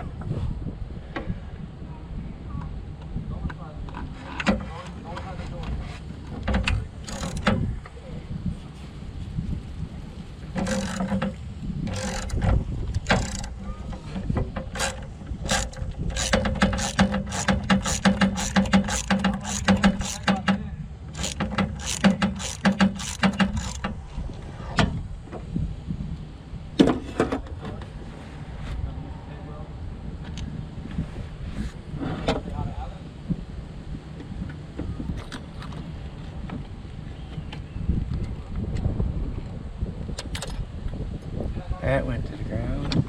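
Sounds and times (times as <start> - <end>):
ratchet wrench clicking: 7.0 - 7.5, 10.6 - 13.6, 14.6 - 20.5, 21.1 - 24.0.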